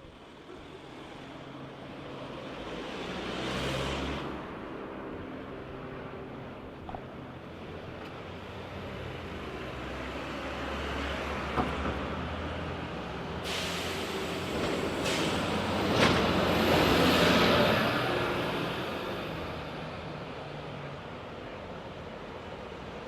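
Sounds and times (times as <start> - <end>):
traffic rumble: 0.0 - 23.0
vehicle passing hiss: 13.2 - 19.6.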